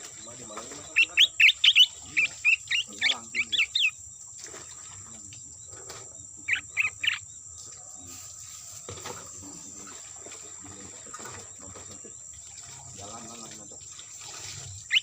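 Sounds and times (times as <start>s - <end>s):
loud bird chirps: 0.0s - 4.0s, 6.4s - 7.3s, 14.8s - 15.0s.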